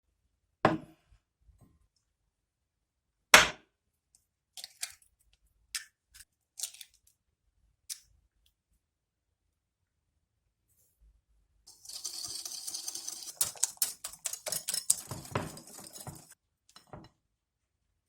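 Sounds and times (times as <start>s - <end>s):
sharp knocks of kitchen objects: 3.4s - 3.6s.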